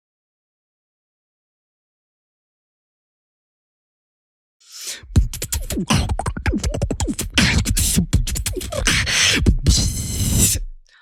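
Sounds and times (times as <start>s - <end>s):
person beatboxing: 4.7s - 11.0s.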